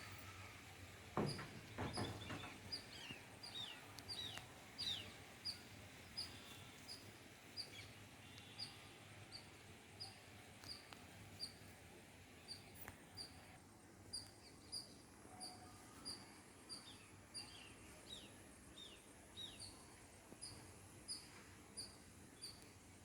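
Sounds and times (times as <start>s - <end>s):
descending bird calls: 0.0s - 10.8s.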